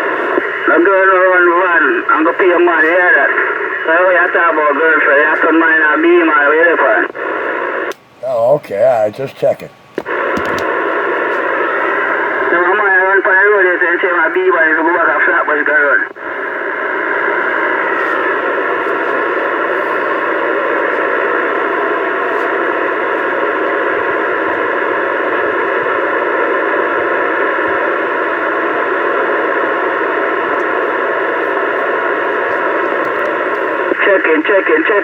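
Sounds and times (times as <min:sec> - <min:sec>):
radio static hiss: 0:00.0 - 0:35.0.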